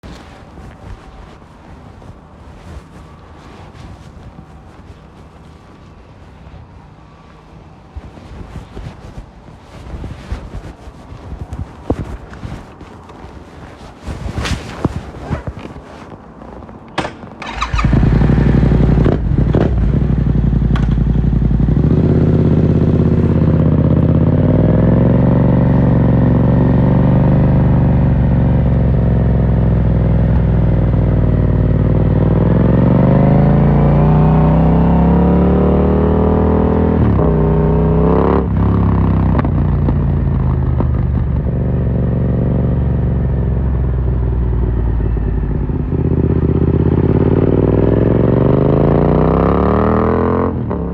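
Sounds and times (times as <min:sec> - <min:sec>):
motorcycle engine running: 0:17.4 - 0:33.4
engine revving: 0:32.1 - 0:38.6, 0:46.1 - 0:50.8.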